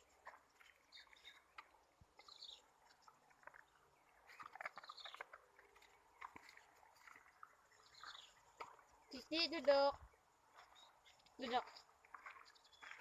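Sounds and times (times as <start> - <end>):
dogs chewing: 0.0 - 9.1.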